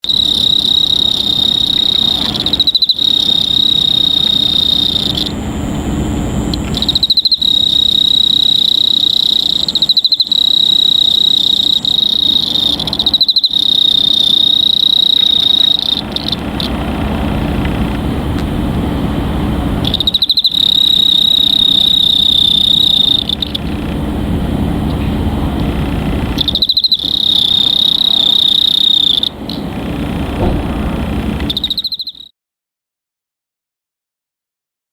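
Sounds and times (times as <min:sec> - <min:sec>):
cricket trilling: 0:00.0 - 0:32.3.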